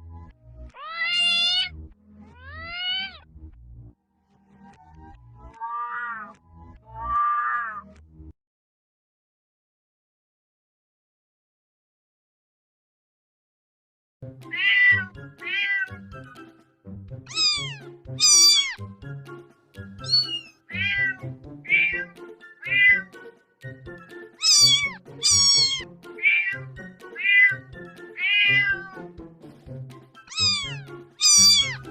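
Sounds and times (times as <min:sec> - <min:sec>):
cat meowing: 0:00.7 - 0:03.3, 0:05.5 - 0:07.8, 0:14.5 - 0:16.0, 0:17.3 - 0:18.8, 0:20.0 - 0:23.1, 0:24.4 - 0:29.0, 0:30.3 - 0:31.9.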